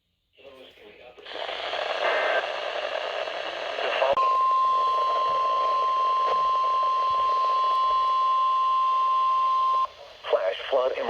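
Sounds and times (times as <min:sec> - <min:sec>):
radio hiss: 0:00.6 - 0:04.2, 0:09.6 - 0:11.0.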